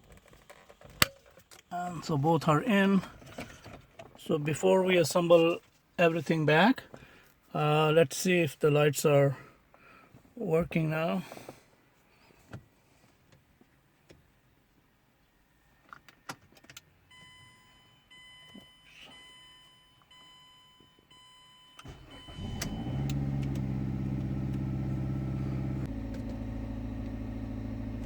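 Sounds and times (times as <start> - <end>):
car warning chime beeping: 17.0 - 25.9
car engine cranking and idling: 21.8 - 28.0.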